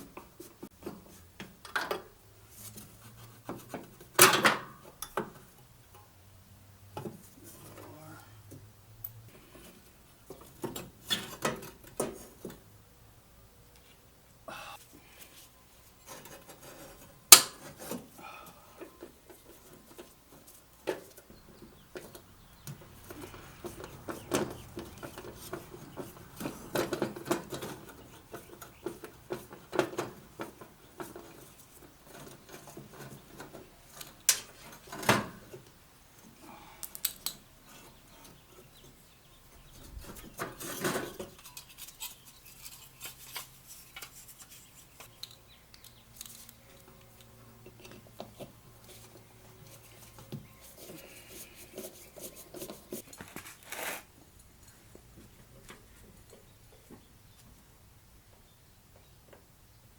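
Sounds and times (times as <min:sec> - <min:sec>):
hands handling wiring harness: 0:39.8 - 0:57.5.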